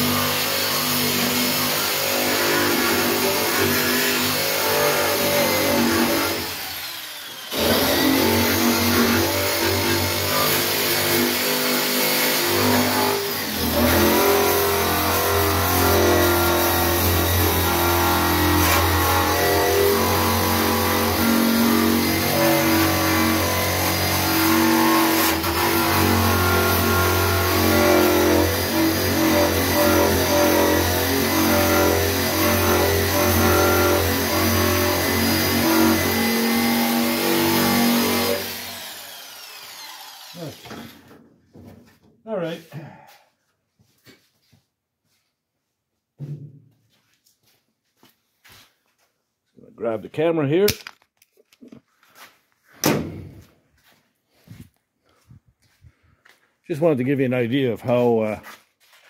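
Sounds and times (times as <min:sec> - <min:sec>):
rotary power tool stripping paint: 0:00.0 - 0:41.3.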